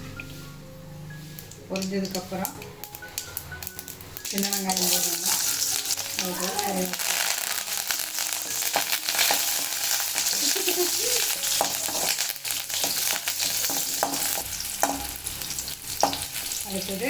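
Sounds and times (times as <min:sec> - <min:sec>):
frying in oil sizzling: 0:01.2 - 0:17.0
utensil clicking in pan: 0:01.4 - 0:06.3.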